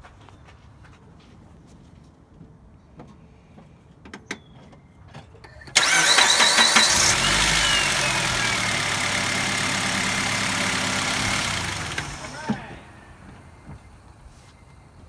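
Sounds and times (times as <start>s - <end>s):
engine cranking on starter: 5.4s - 14.2s
engine whine: 5.6s - 14.4s
car engine idling: 5.7s - 14.5s.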